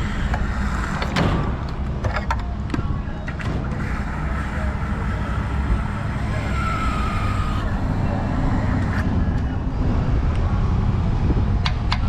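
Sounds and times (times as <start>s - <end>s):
sharp clicks and knocks: 0.2s - 6.1s.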